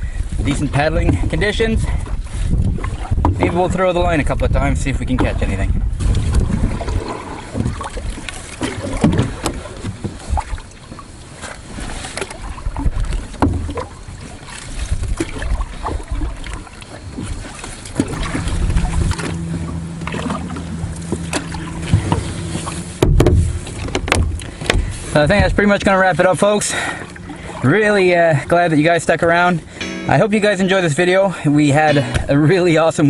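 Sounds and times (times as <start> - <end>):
paddle strokes splashing water: 1.1 - 3.6, 6.0 - 29.8
paddle knocking on hull: 12.8 - 13.9, 18.0 - 26.0
low steady hum: 17.8 - 32.9.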